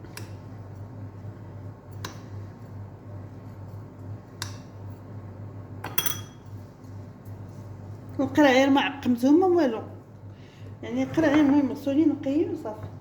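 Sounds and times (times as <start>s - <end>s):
steady low hum: 0.0s - 13.0s
glass clink: 5.9s - 6.4s.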